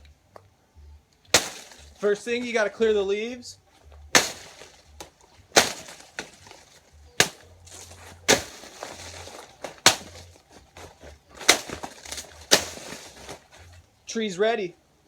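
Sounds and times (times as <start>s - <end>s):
machete chopping leaves: 1.3s - 2.8s, 4.0s - 13.8s.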